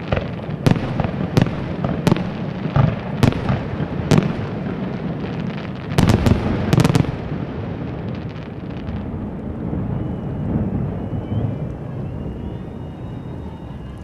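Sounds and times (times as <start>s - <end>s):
firework bangs: 0.0s - 14.0s
fireworks crackling: 0.0s - 14.0s
low rolling rumble: 6.2s - 14.0s.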